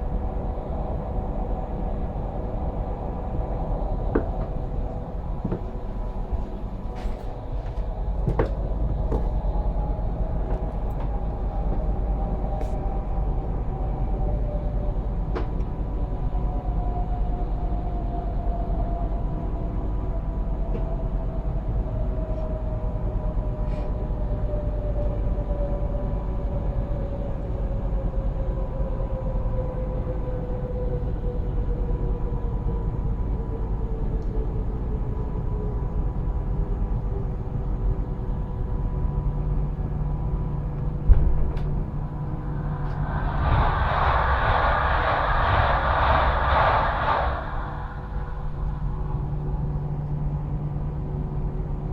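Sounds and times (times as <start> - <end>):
electric train braking with whine: 41.6 - 51.2
rushing noise: 41.7 - 50.7.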